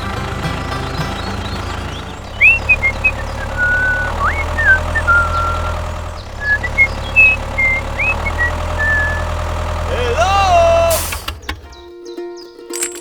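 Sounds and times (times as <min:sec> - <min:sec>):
engine idling: 0:00.0 - 0:11.9
high chirps and whistles: 0:02.3 - 0:09.3.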